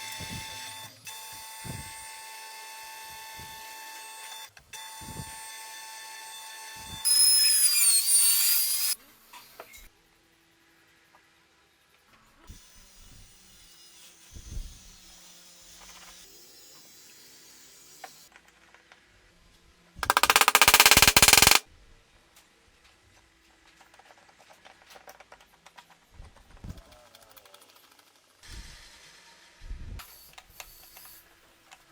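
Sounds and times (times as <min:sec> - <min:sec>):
power tool rattling on wood: 0:20.0 - 0:21.6.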